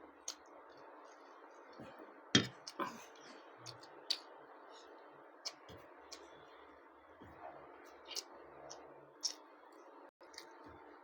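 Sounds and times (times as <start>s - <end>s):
quiet chewing: 0.2s - 10.9s
mouth clicks and lip smacks: 3.6s - 4.4s, 7.9s - 9.4s.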